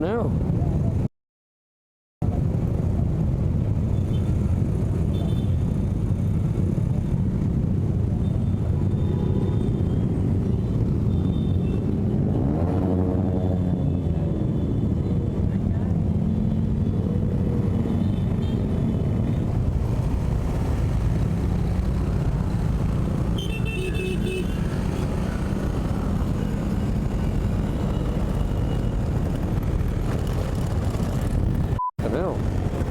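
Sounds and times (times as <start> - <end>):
road noise: 0.0 - 1.1, 2.2 - 32.9.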